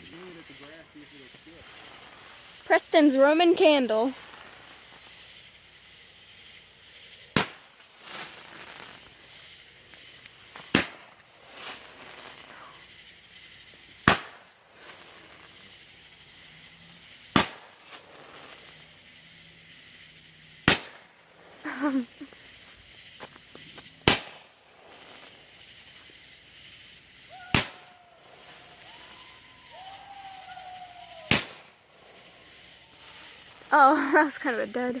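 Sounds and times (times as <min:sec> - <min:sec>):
roman candle pops and hisses: 0:00.0 - 0:35.0.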